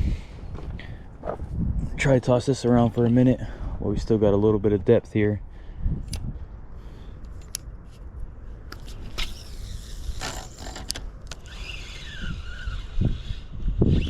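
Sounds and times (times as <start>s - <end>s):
steady low rumble: 0.0s - 10.3s
fishing reel clicks: 8.8s - 14.0s.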